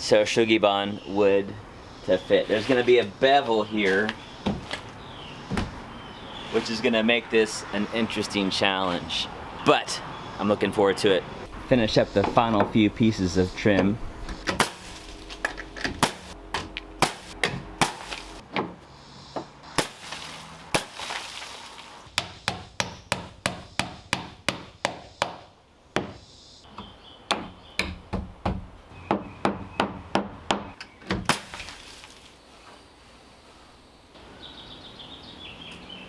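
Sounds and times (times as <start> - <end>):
hammer driving nails into wood: 15.8 - 18.3.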